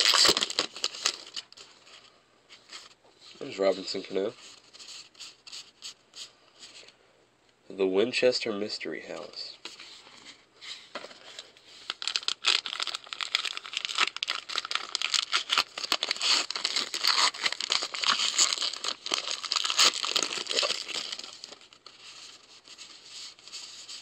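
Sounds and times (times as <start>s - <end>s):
wrapper tearing and crinkling: 0.0s - 1.7s, 11.8s - 24.0s.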